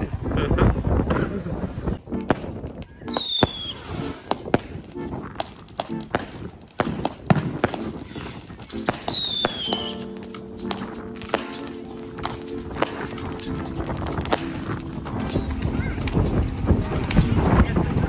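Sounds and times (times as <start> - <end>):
background music: 2.0 - 18.0
firecrackers banging and crackling: 2.1 - 18.0
falling firework whistles: 3.1 - 4.8, 7.7 - 15.6.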